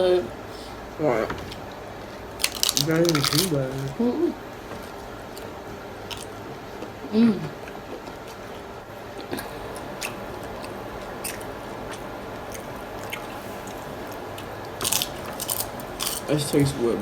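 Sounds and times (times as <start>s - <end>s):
food crunching: 1.5s - 16.8s
wet chewing mouth sounds: 4.8s - 16.3s.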